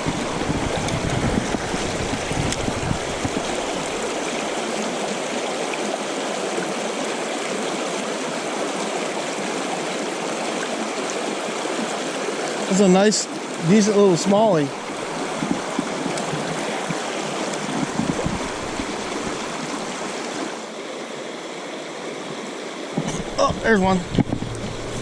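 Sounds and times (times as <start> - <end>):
low rumbling: 0.0 - 4.4, 23.0 - 25.0
river water flowing: 0.0 - 25.0.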